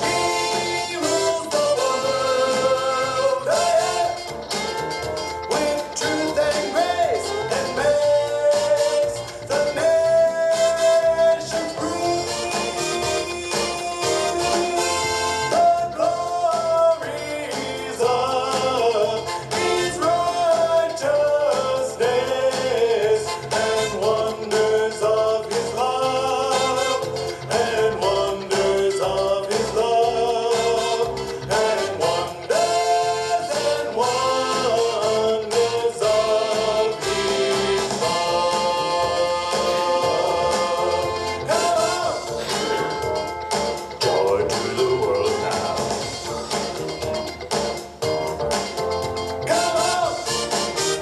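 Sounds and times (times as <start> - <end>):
instrumental backing music: 0.0 - 51.0
person singing long notes: 5.5 - 43.2.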